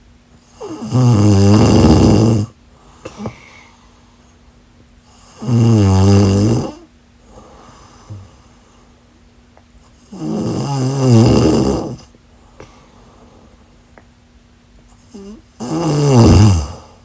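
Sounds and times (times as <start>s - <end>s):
loud snoring: 0.5s - 2.6s, 5.1s - 7.5s, 10.0s - 12.1s, 15.0s - 17.0s
quiet breathing: 2.6s - 5.6s, 6.7s - 9.2s, 11.8s - 14.0s, 16.6s - 17.0s.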